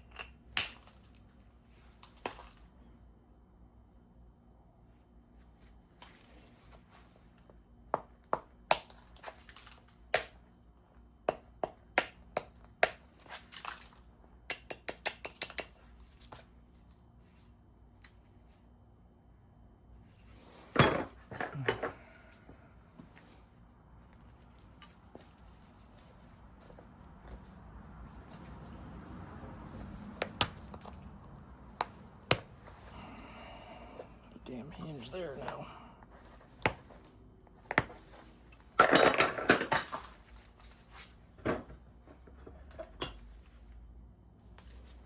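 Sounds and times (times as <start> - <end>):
tool striking stone: 10.1 - 10.4, 11.3 - 13.0, 14.5 - 15.7.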